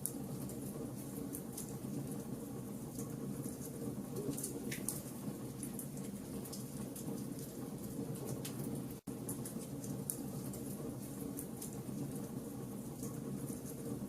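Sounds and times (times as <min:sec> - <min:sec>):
fire crackling and popping: 0:00.0 - 0:14.0
wood fire burning: 0:00.0 - 0:14.0.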